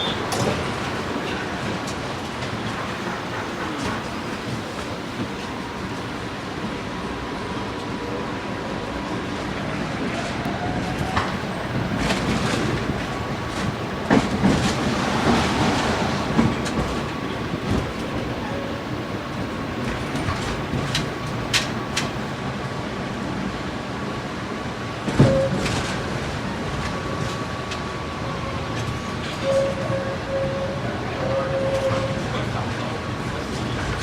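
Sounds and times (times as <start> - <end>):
wheels clacking on rails: 0.0 - 6.8, 10.1 - 22.5
tram rumbling on rails: 0.0 - 34.0.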